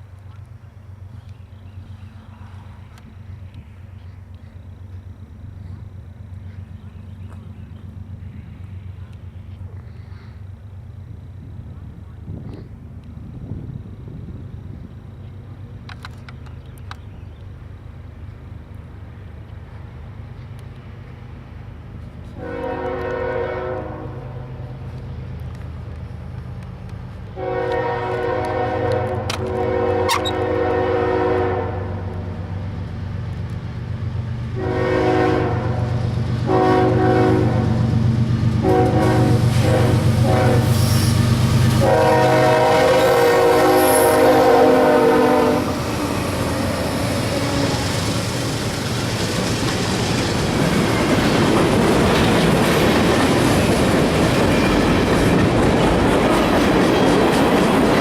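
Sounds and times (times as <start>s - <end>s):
locomotive engine rumble: 0.0s - 58.0s
train clickety-clack: 19.4s - 23.7s, 24.7s - 58.0s
locomotive horn blasts: 22.3s - 24.5s, 27.4s - 32.1s, 34.6s - 37.7s, 38.6s - 45.8s.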